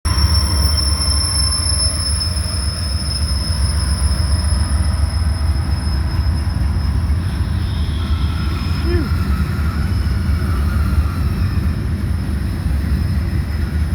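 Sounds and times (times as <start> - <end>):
freight train rumbling past: 0.0 - 13.9
high-pitched whine: 0.1 - 12.4.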